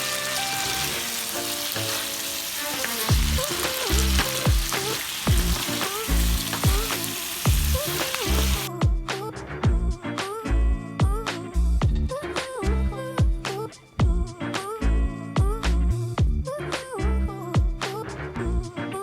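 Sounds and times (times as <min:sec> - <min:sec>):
food sizzling in a pan: 0:00.0 - 0:08.7
background music with bass beat: 0:03.1 - 0:19.0.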